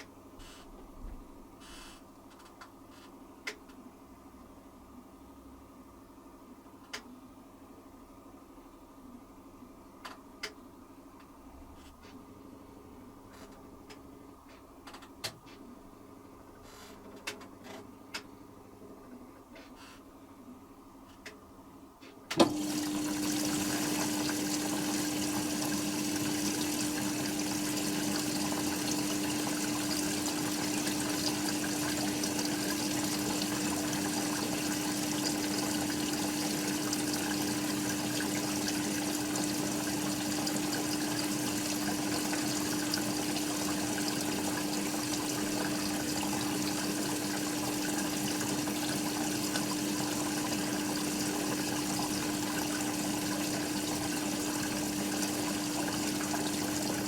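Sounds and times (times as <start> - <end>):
drain pump click: 22.3 - 57.0
drain pump humming: 22.3 - 57.0
water gushing out: 22.4 - 57.0.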